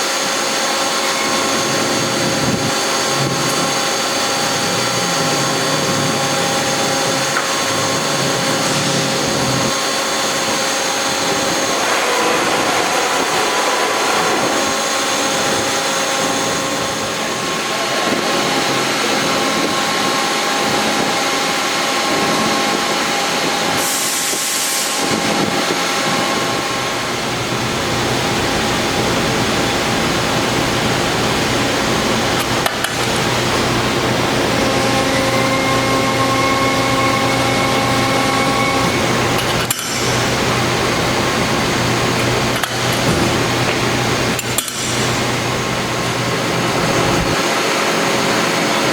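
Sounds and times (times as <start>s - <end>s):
press machine hum and whine: 0.0s - 48.9s.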